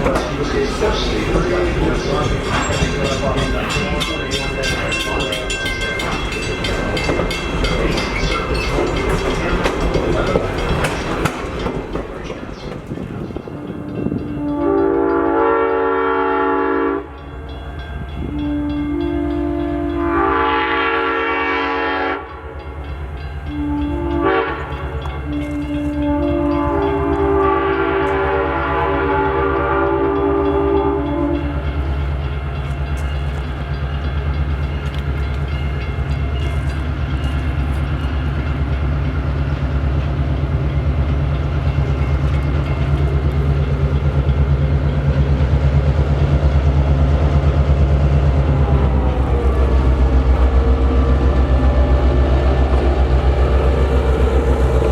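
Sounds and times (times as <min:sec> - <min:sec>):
locomotive horn blasts: 0:14.1 - 0:17.1, 0:18.2 - 0:22.4, 0:23.5 - 0:31.6.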